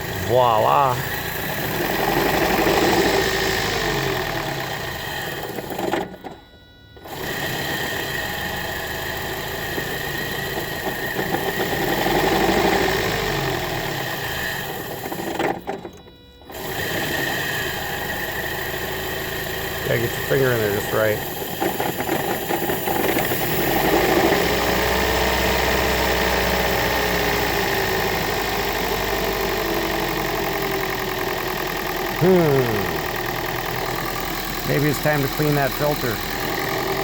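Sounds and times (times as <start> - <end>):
car engine idling: 0.0 - 5.0, 28.0 - 37.0.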